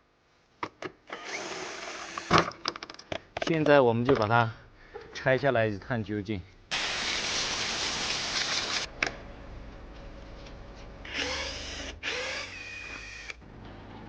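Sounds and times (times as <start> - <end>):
power tool motor whine: 1.1 - 2.4, 11.1 - 13.4
power tool hissing: 6.7 - 8.9.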